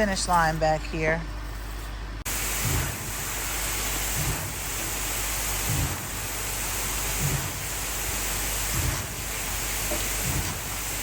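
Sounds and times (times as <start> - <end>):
concrete pump hissing roar: 2.3 - 11.0
low thumps of pump strokes: 4.0 - 6.2, 7.0 - 11.0.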